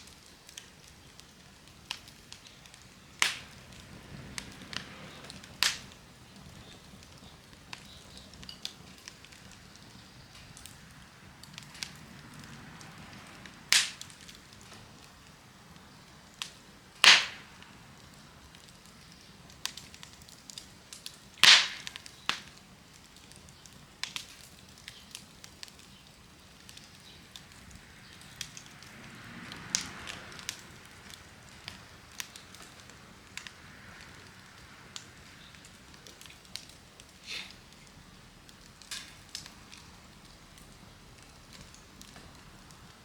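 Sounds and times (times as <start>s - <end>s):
fire hiss: 0.0s - 43.0s
loud fire snaps: 0.0s - 43.0s
wood fire crackling: 0.0s - 43.0s.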